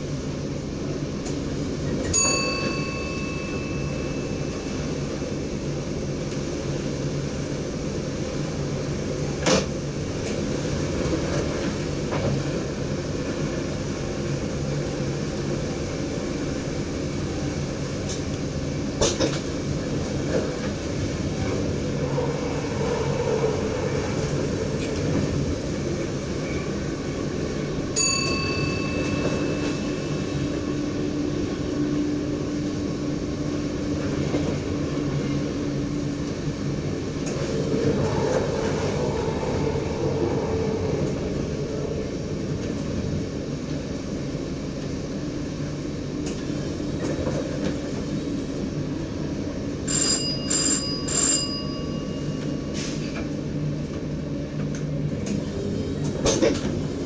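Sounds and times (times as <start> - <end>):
train wheels rumbling: 0.0 - 57.0
bell-like chime: 2.2 - 4.6, 28.0 - 29.9, 49.9 - 52.8.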